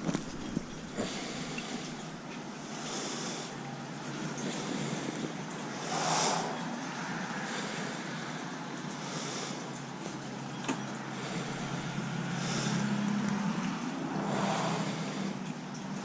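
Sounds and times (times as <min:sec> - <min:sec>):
passing vehicle engine hum: 0:03.5 - 0:16.0.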